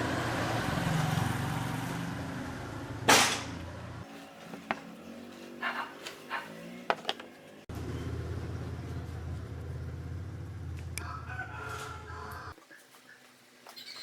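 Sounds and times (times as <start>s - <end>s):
parts clicking and tapping: 6.9s - 7.5s.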